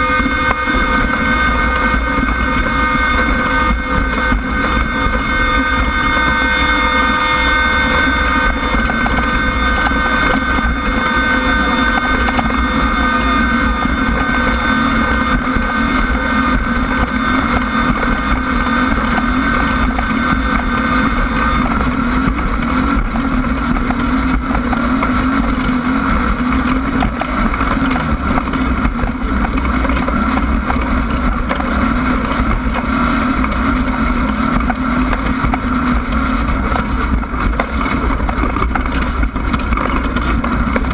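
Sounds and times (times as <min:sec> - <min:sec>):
high whining tones: 0:00.0 - 0:40.9
race vehicle engine running: 0:00.0 - 0:40.9
wind noise on microphone: 0:00.0 - 0:40.9.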